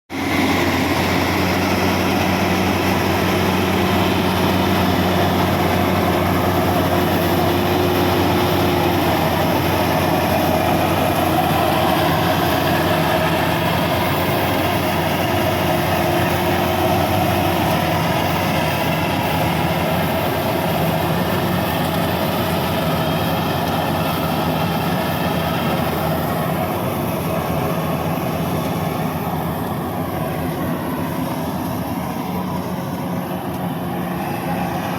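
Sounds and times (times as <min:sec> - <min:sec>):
combine harvester engine humming: 0:00.1 - 0:34.9.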